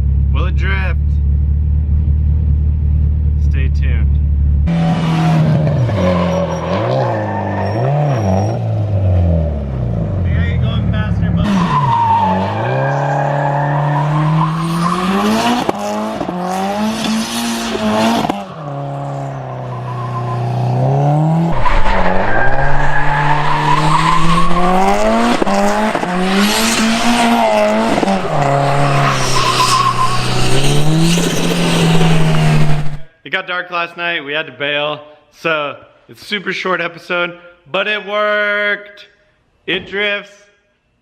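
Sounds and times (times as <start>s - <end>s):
car engine revving: 4.1s - 33.1s
tyres squealing and skidding: 4.8s - 8.8s, 11.4s - 15.8s, 17.1s - 33.0s.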